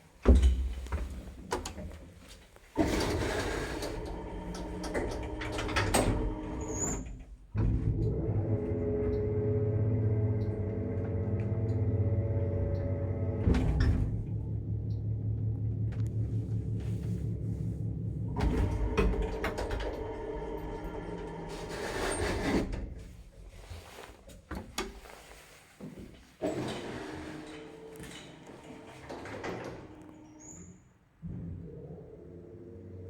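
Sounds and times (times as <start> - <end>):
lift electric motor hum: 2.8 - 22.8.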